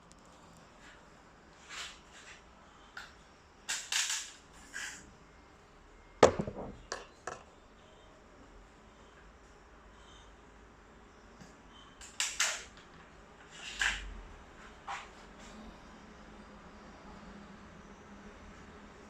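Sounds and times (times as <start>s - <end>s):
rifle handling clicks and rattles: 3.7s - 4.4s.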